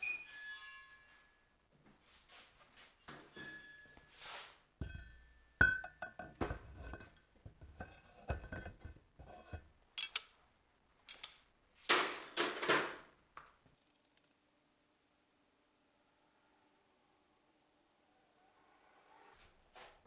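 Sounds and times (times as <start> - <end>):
metal items clinking: 7.8 - 10.3.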